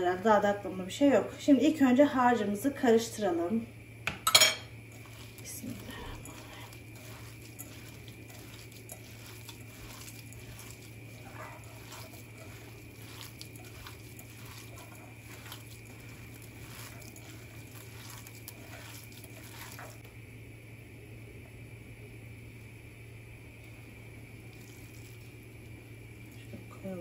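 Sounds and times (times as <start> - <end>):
wet squelches of mixing meat: 4.8 - 20.1, 24.4 - 27.0.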